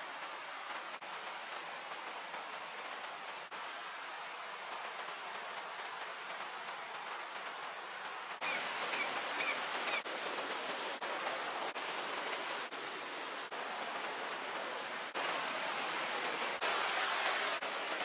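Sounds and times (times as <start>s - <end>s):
rushing water: 0.0s - 18.0s
bird chirping: 8.4s - 10.0s.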